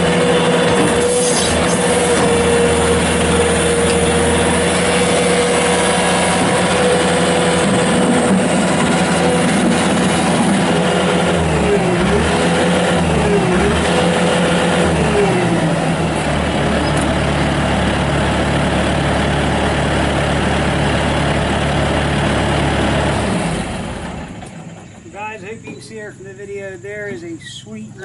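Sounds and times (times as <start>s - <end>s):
diesel engine running at high revs: 0.0s - 28.0s.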